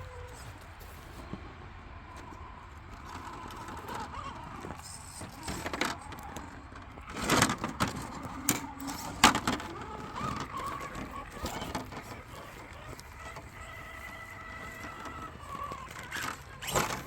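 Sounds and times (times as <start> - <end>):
faint motor whine: 0.0 - 17.0
tires and chassis knocking: 2.0 - 17.0.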